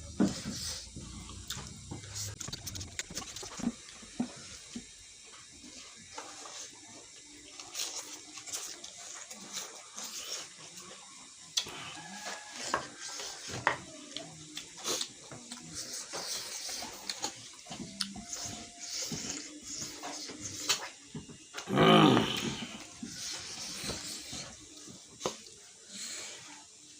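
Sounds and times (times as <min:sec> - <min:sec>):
person chewing: 0:00.3 - 0:05.2, 0:06.2 - 0:10.9, 0:14.1 - 0:20.9, 0:21.6 - 0:24.4.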